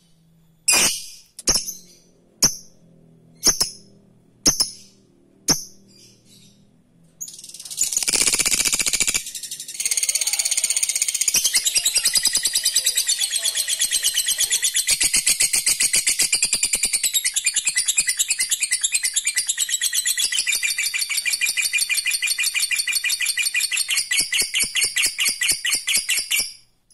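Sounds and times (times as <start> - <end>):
lovebird chattering trill: 7.3 - 26.4.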